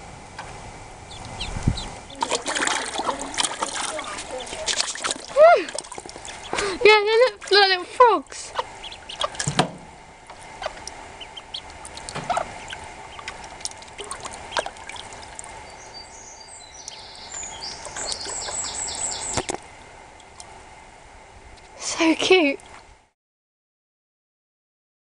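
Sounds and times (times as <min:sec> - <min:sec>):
ducklings peeping: 0:01.0 - 0:20.6, 0:21.5 - 0:21.8
water splashing and dripping: 0:01.2 - 0:15.7, 0:16.8 - 0:20.6.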